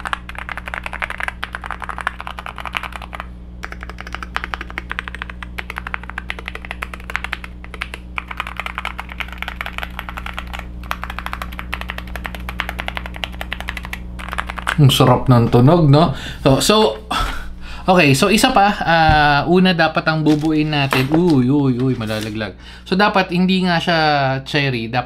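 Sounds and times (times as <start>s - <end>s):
keyboard typing clacks: 0.0s - 15.0s
steady low hum: 0.0s - 25.0s.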